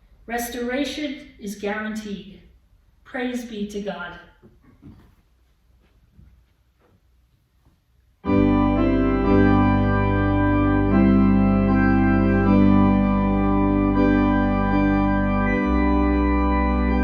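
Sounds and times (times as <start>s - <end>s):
organ playing held chords: 8.2s - 17.0s.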